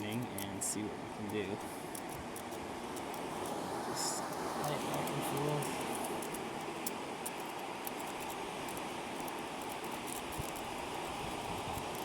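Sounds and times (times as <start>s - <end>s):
lock pick scratchy clicks: 0.0s - 3.6s, 4.3s - 12.0s
outdoor background hiss: 0.0s - 12.0s.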